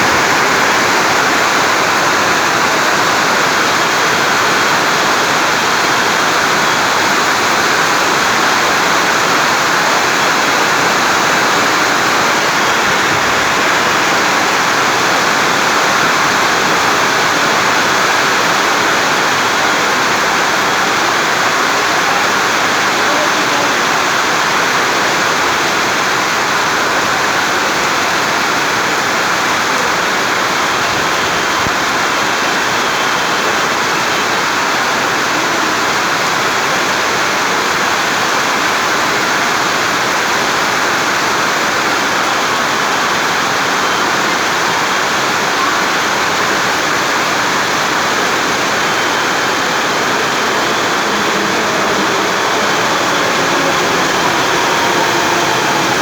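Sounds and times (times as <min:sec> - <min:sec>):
heavy rain falling: 0:00.0 - 0:56.0.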